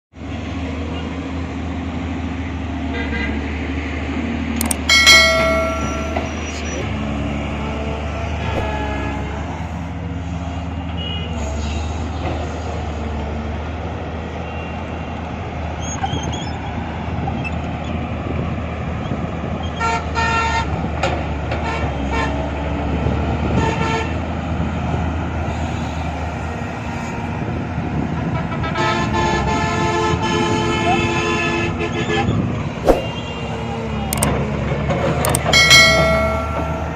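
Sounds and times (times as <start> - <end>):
heavy engine running: 0.2 - 15.8, 31.7 - 36.9
vehicle horn honks: 8.4 - 9.4.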